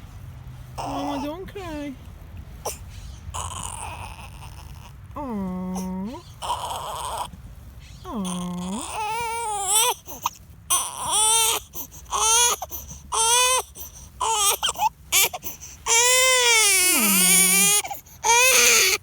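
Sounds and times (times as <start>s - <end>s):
baby crying: 0.8s - 1.3s, 3.4s - 5.0s, 5.7s - 7.3s, 8.1s - 19.0s.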